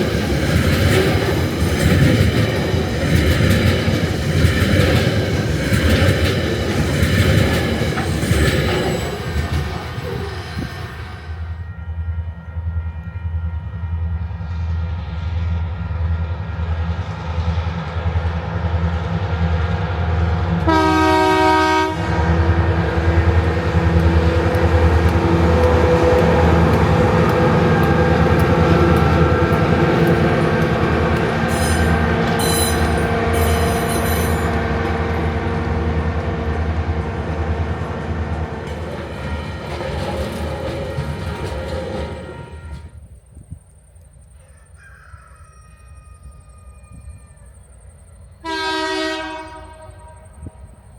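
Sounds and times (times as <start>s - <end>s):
diesel locomotive engines: 0.0s - 50.9s
locomotive horn: 11.0s - 16.9s, 20.6s - 43.1s, 48.4s - 50.8s
wagons clicking over rail joints: 22.9s - 35.2s, 36.0s - 43.0s.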